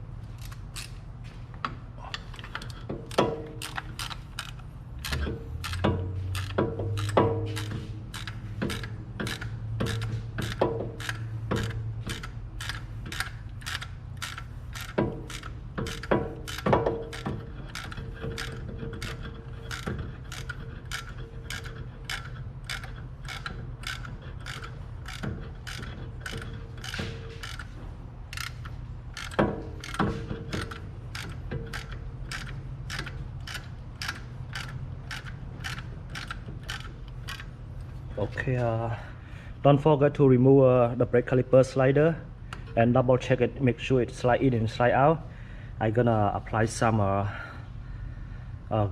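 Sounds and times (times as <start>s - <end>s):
steady low hum: 0.0s - 48.9s
ratchet wrench clicking: 0.4s - 1.0s, 2.1s - 38.0s.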